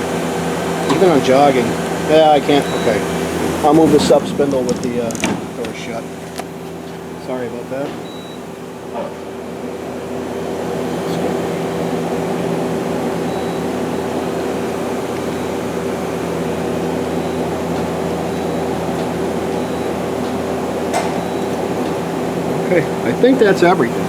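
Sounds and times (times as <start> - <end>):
lathe machine hum: 0.0 - 24.0.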